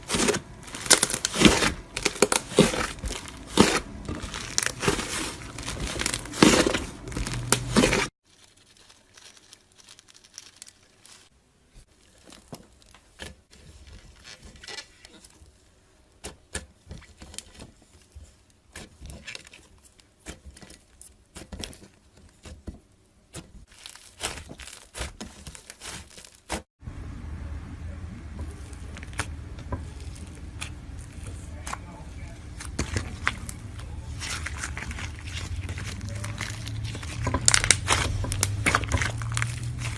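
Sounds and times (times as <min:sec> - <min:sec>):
slime crackling and popping: 0:00.0 - 0:11.3, 0:23.3 - 0:26.7, 0:28.5 - 0:39.9.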